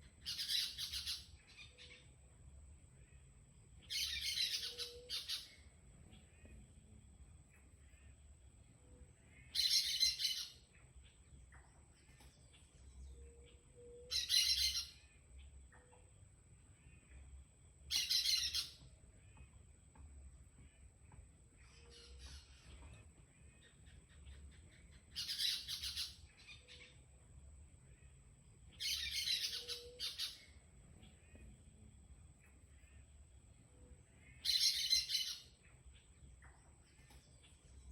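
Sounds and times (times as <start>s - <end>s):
faint high-pitched whine: 0.0s - 37.9s
harsh chattering bird calls: 3.8s - 5.6s, 17.9s - 18.8s, 23.6s - 27.0s, 28.7s - 30.5s, 34.3s - 36.1s.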